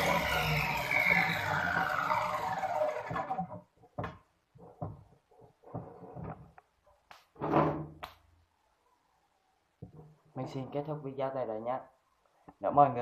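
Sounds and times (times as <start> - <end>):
electric saw motor winding down: 0.0 - 3.6
short knocks and clunks: 3.9 - 6.5.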